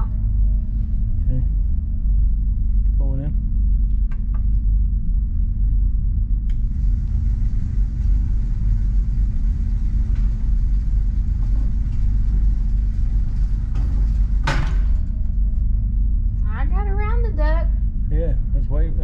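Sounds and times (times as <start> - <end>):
constant hum: 0.0 - 19.0
low mechanical rumble: 0.0 - 19.0.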